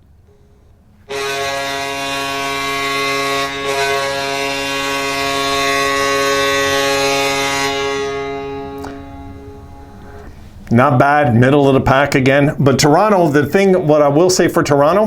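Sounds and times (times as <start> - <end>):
goal horn long blast: 0.3 - 10.3.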